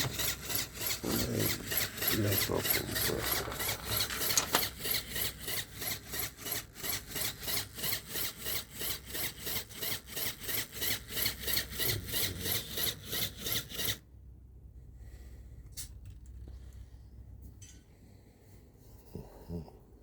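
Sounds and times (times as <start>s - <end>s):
pneumatic compressor pumping: 0.0s - 14.0s.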